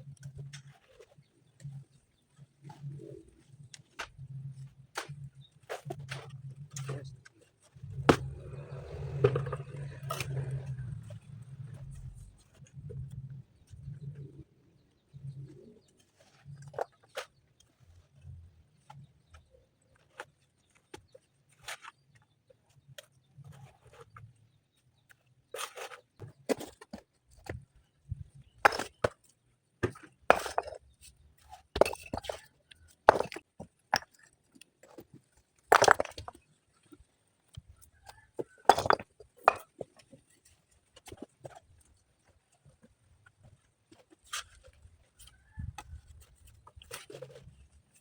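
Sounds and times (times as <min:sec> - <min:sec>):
stones and tools knocking: 0:07.8 - 0:10.9, 0:28.6 - 0:36.6, 0:38.1 - 0:40.3, 0:41.0 - 0:41.6.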